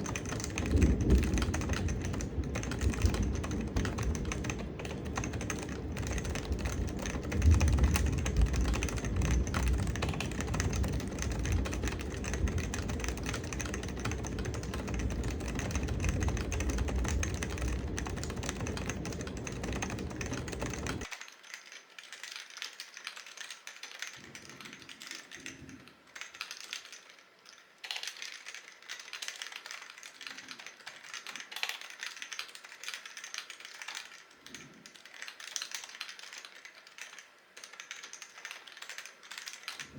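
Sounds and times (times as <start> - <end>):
deep rumble: 0.0 - 21.1
muted keyboard keystrokes: 0.0 - 21.2.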